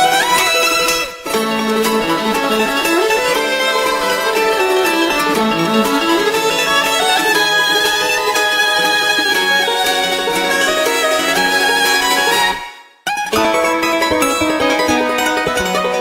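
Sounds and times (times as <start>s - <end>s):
fiddle-led string tune: 0.0s - 16.0s.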